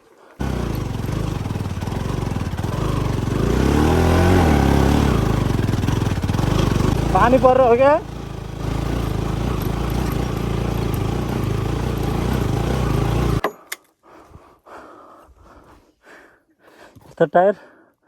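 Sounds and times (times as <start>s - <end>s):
motorcycle engine running: 0.4s - 13.4s.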